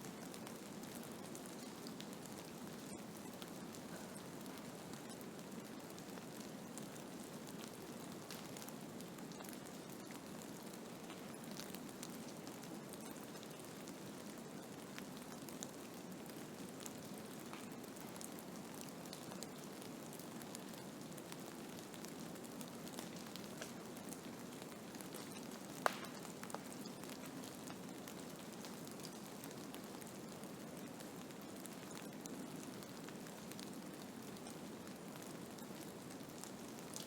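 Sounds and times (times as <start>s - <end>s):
faint ticks: 23.2s - 23.8s, 25.1s - 27.3s.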